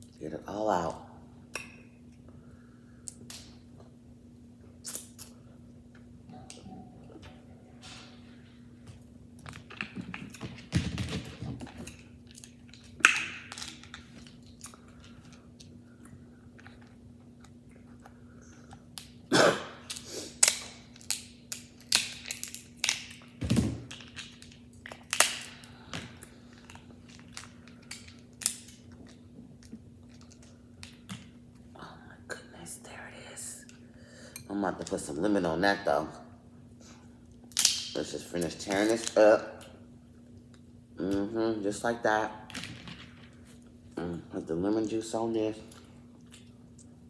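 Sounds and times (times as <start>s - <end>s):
chewing with wet mouth clicks: 45.7s - 47.0s.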